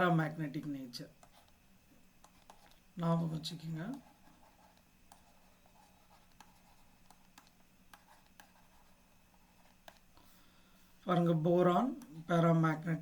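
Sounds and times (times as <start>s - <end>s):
faint steady hum: 0.0s - 13.0s
faint clicks and taps: 2.2s - 2.8s, 3.8s - 9.0s, 9.6s - 10.2s.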